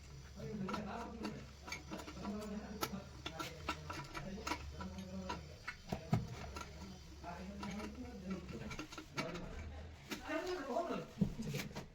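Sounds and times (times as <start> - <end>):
faint background voices: 0.0 - 11.9.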